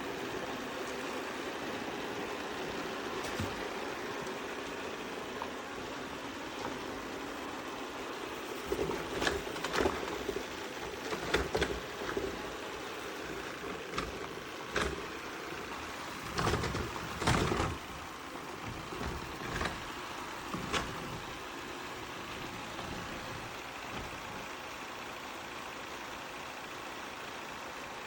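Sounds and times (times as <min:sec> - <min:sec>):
short knocks and clatters: 0:03.0 - 0:05.5, 0:08.6 - 0:24.6.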